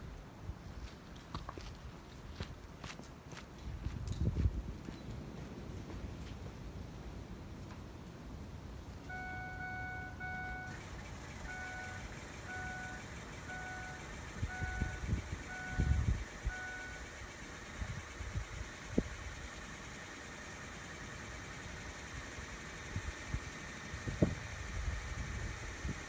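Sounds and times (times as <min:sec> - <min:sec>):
warning chime beeps: 0:09.1 - 0:17.8.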